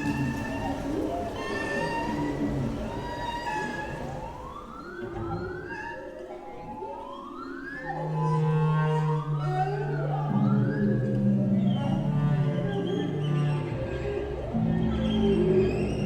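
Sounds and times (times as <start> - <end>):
ocean sounds: 0.0 - 5.5.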